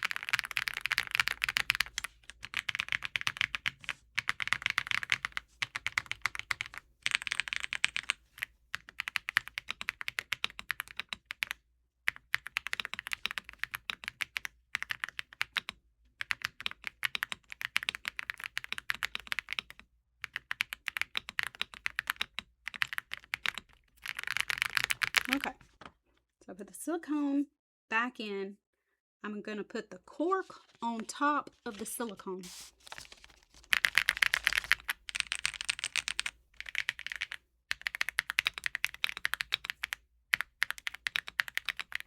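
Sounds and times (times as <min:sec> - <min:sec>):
mechanical keyboard keys clacking: 0:00.0 - 0:08.2, 0:12.3 - 0:25.6, 0:33.6 - 0:42.0.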